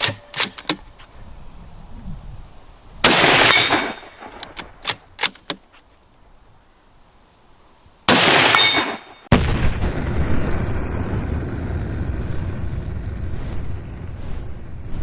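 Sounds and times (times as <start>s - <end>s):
rifle shot: 3.0s - 5.5s, 8.1s - 10.5s
heavy rolling boom: 9.3s - 15.0s.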